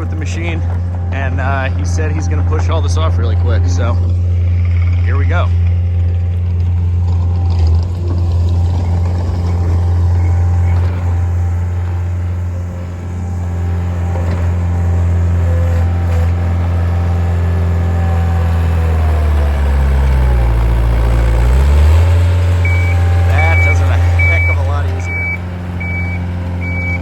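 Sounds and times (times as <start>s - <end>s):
diesel engine running: 0.0s - 27.0s.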